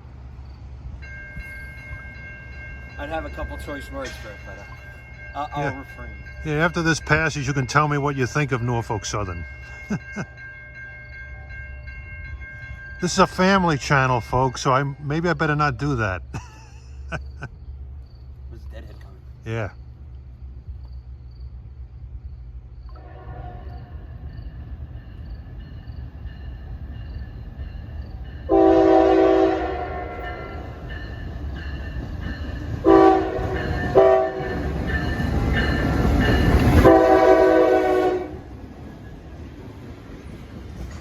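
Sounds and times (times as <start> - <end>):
freight train rumbling past: 0.0 - 41.0
locomotive horn blasts: 23.0 - 24.1, 28.5 - 30.8, 32.8 - 34.7, 36.6 - 38.5.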